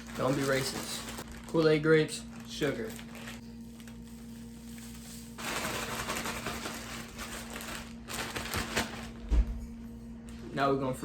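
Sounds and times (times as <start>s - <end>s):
grapes rustling in powder: 0.0s - 8.6s.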